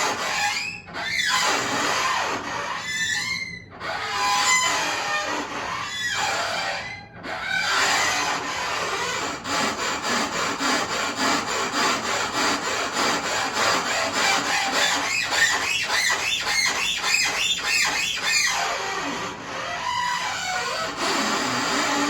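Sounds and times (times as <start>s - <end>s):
rhythmic scraping on dishwasher: 7.4s - 18.5s.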